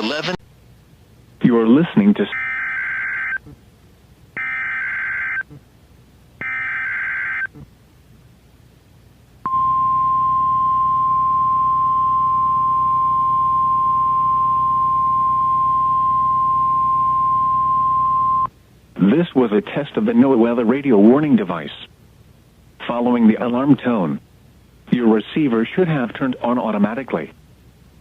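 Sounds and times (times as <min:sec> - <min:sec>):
steady warning alarm tone: 0:02.3 - 0:03.4, 0:04.4 - 0:05.5, 0:06.4 - 0:07.5, 0:09.5 - 0:18.5.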